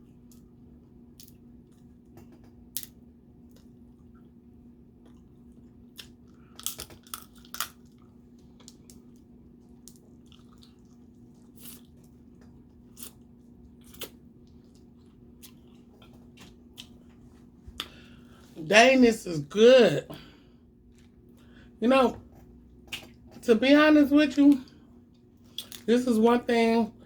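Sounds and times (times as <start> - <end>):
chewing: 5.0 - 18.0.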